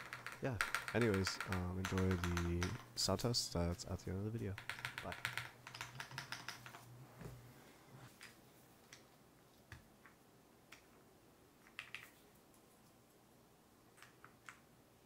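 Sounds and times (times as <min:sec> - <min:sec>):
faint plastic keyboard parts clicking: 0:00.0 - 0:02.9, 0:04.5 - 0:06.8.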